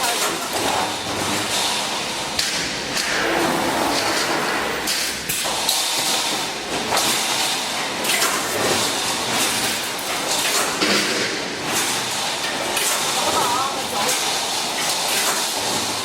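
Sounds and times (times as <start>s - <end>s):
hissy industrial noise: 0.0s - 10.0s.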